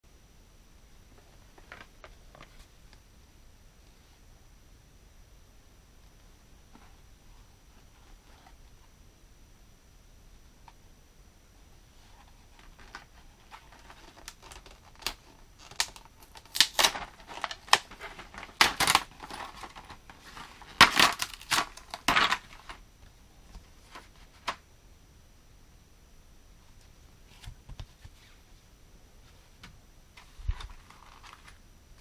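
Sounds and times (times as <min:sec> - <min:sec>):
packaging crinkling and tearing: 0:12.5 - 0:22.8.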